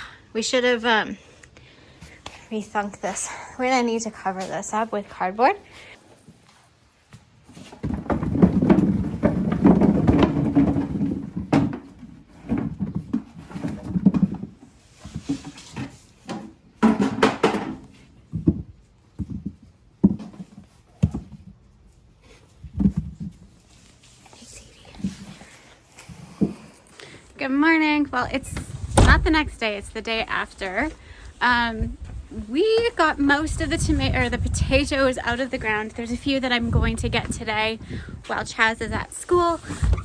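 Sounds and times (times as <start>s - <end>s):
thuds and knocks of handling: 7.5s - 21.7s, 22.3s - 23.6s.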